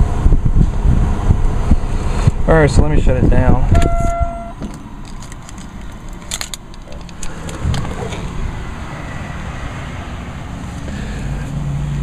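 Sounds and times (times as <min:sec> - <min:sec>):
low handling rumble: 0:00.0 - 0:12.0
car keys jangling: 0:03.7 - 0:08.1.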